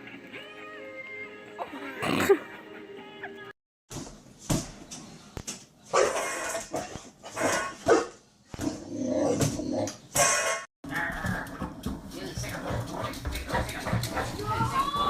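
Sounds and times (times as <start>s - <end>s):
dog barking: 5.9s - 6.5s, 7.4s - 8.2s.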